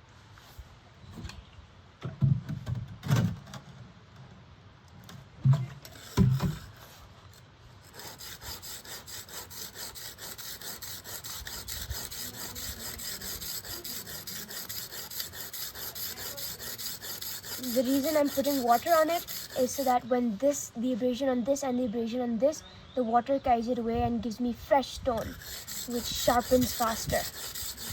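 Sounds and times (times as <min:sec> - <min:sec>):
blade rasping on whetstone: 0:07.8 - 0:20.1, 0:25.1 - 0:27.9.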